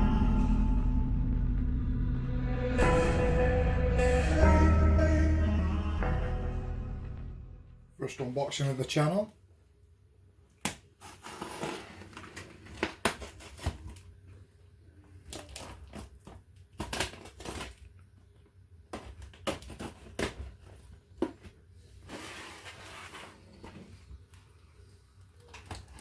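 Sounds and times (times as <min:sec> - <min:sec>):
packaging crinkling: 0:15.2 - 0:18.1.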